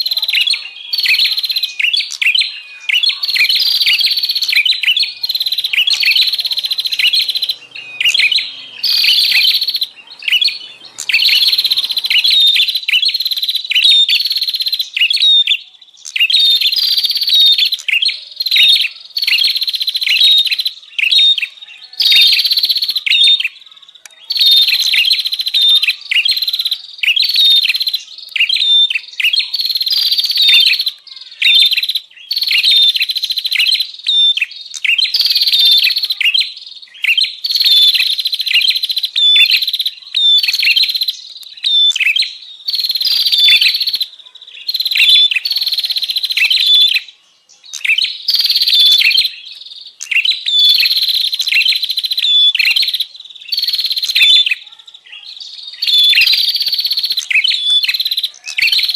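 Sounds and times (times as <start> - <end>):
bird chattering harshly: 0.0 - 14.4.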